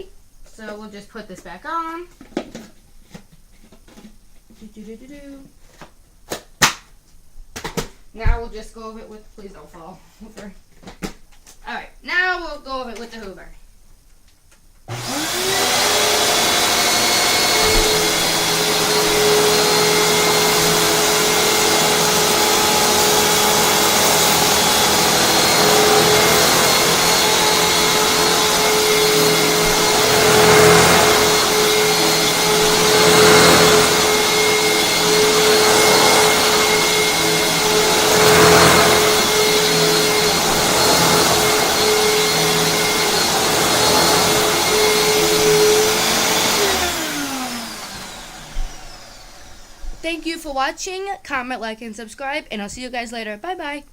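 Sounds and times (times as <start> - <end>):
vacuum cleaner motor whine: 14.9 - 50.4
vacuuming rice off carpet: 14.9 - 50.7.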